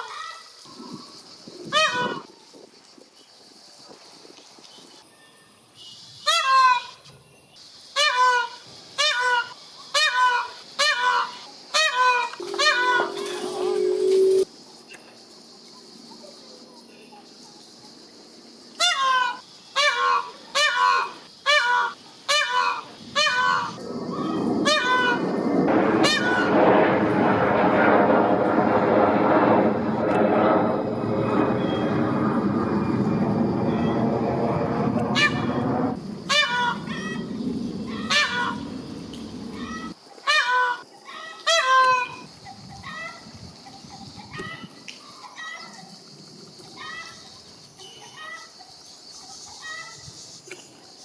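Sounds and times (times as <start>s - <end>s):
peacock honking calls: 6.2s - 7.0s, 8.0s - 14.4s, 18.8s - 25.4s, 36.3s - 37.3s, 37.9s - 38.8s, 39.6s - 43.2s
low rumble of traffic: 11.5s - 40.0s.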